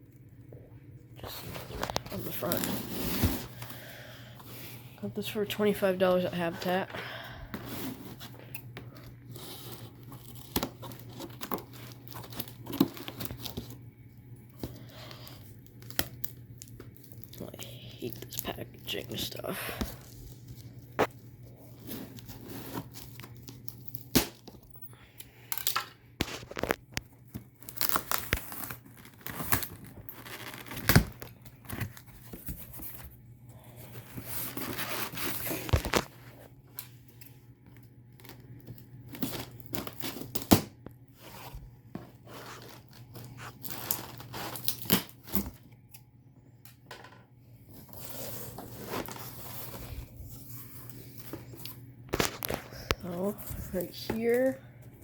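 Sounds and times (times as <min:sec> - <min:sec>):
packing material tearing: 0:25.5 - 0:32.5, 0:34.0 - 0:36.2, 0:42.2 - 0:45.6.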